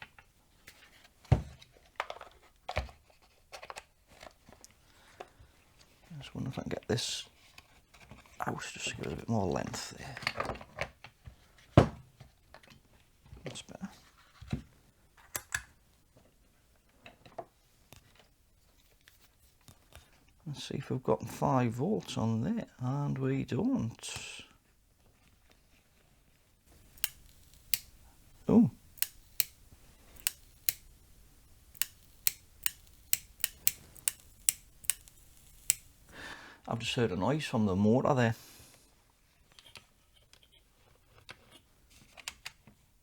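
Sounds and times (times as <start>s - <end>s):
handling clicks and knocks: 26.7s - 36.2s.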